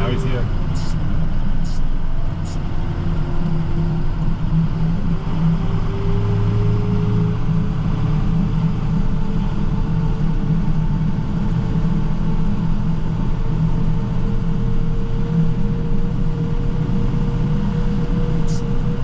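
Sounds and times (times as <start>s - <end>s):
truck engine droning: 0.0s - 19.0s.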